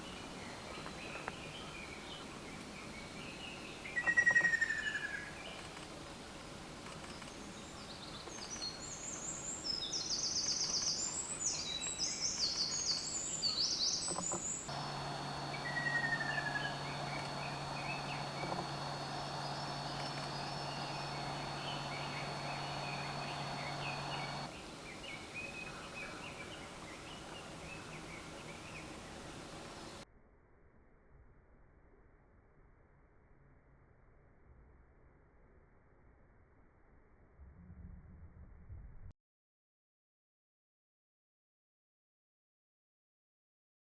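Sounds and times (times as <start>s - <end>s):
birds chirping: 7.0s - 30.0s
steady hum: 11.0s - 30.0s.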